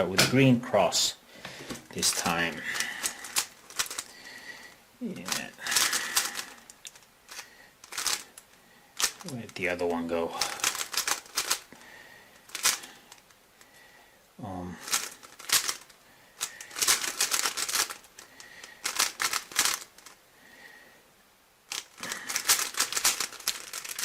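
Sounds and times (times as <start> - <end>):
puzzle cube plastic clicking: 2.0 - 4.1, 5.3 - 9.6, 10.6 - 11.7, 12.5 - 13.4, 14.8 - 20.2, 21.7 - 24.0.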